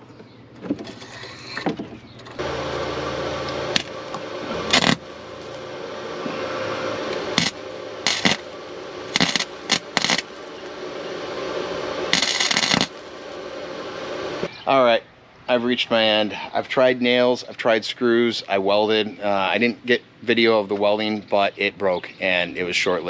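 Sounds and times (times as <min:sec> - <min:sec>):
car engine running: 0:02.3 - 0:14.6.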